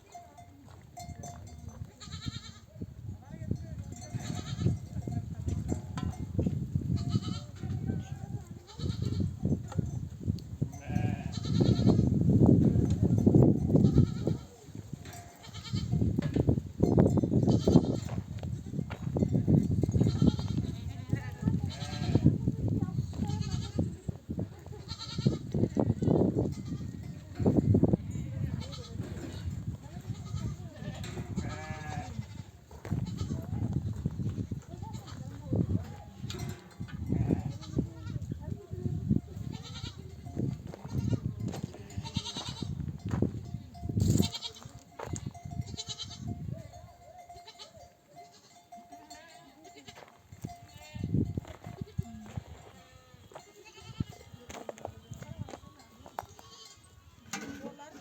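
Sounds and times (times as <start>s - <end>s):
sheep bleating: 2.0s - 2.7s, 7.0s - 9.3s, 10.8s - 12.1s, 13.8s - 14.5s, 20.0s - 22.4s, 24.7s - 27.0s, 30.1s - 33.4s, 37.0s - 38.2s, 40.9s - 42.7s, 45.7s - 46.3s, 52.7s - 54.4s, 56.3s - 56.9s.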